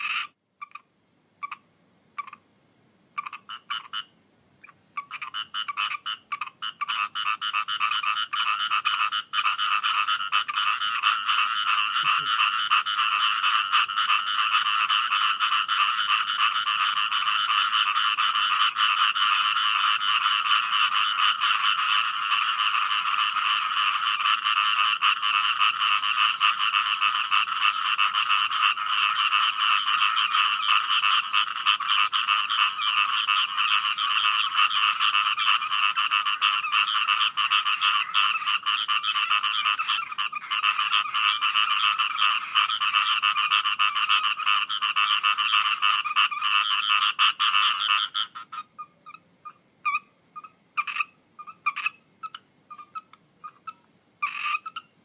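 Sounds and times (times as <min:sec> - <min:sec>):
frogs croaking: 0:00.0 - 0:55.0.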